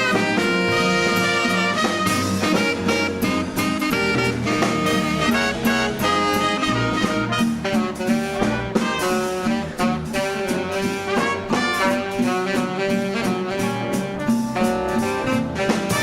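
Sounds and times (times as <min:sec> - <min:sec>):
swing band playing: 0:00.0 - 0:16.0.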